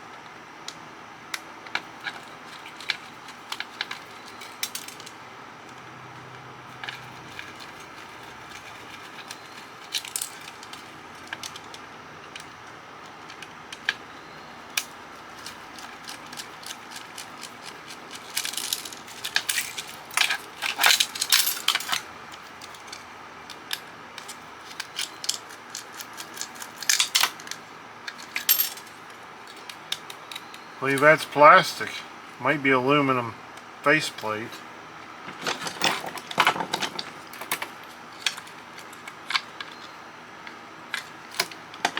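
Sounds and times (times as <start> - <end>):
screwdriver and parts clicking: 23.6 - 28.8.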